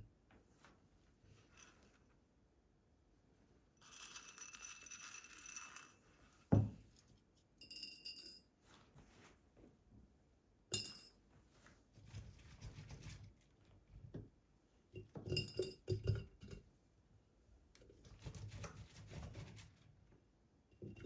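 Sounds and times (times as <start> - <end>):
glass clinks: 10.7 - 11.2, 15.0 - 16.3.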